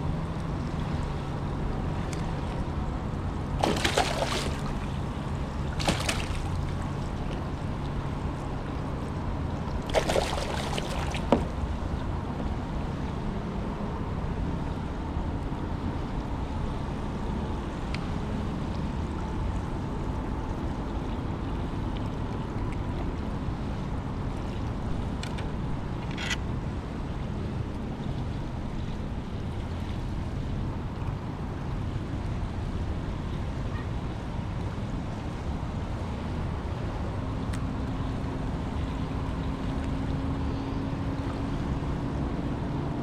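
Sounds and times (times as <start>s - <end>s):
steady low hum: 0.0s - 13.4s
water splashing against kayak: 1.9s - 12.3s.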